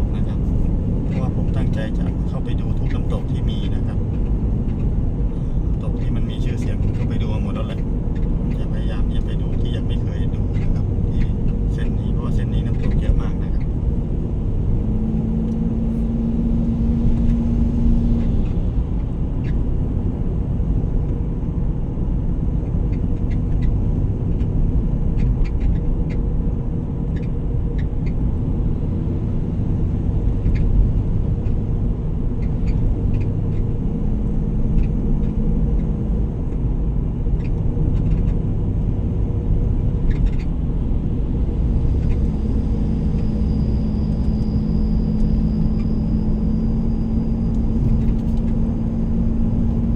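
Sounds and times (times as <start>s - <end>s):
vehicle engine and tyre rumble: 0.0s - 49.9s.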